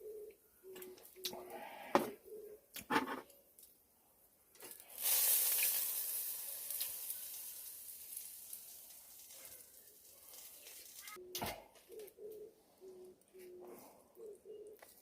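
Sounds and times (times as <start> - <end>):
sizzling hiss: 4.7 - 11.2.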